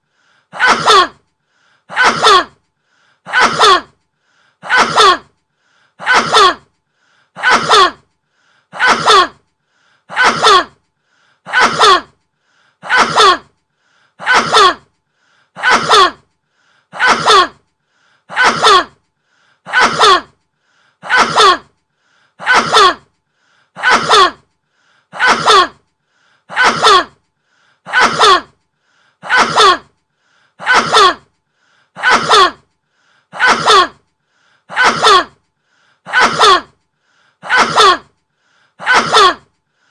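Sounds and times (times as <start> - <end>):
person sneezing: 0.5 - 1.2, 1.9 - 2.6, 3.3 - 4.0, 4.6 - 5.4, 6.0 - 6.7, 7.4 - 8.1, 8.7 - 9.4, 10.1 - 10.8, 11.5 - 12.2, 12.8 - 13.6, 14.2 - 14.9, 15.6 - 16.3, 16.9 - 17.6, 18.3 - 19.0, 19.7 - 20.4, 21.0 - 21.8, 22.4 - 23.1, 23.8 - 24.5, 25.1 - 25.8, 26.5 - 27.2, 27.9 - 28.6, 29.2 - 30.0, 30.6 - 31.3, 32.0 - 32.7, 33.3 - 34.0, 34.7 - 35.4, 36.1 - 36.8, 37.4 - 38.2, 38.8 - 39.5.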